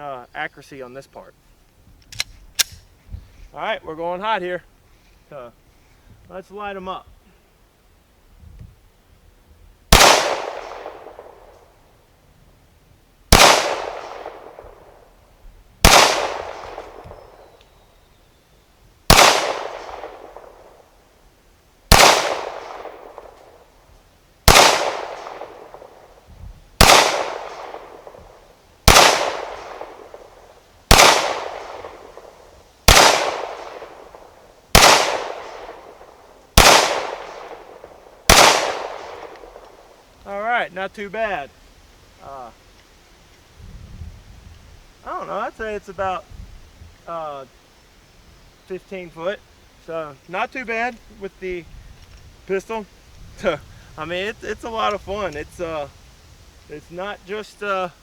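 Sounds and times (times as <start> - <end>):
pistol shots with echo: 9.9 - 11.5, 13.3 - 15.0, 15.8 - 17.6, 19.1 - 20.8, 21.9 - 23.6, 24.4 - 26.1, 26.8 - 39.9.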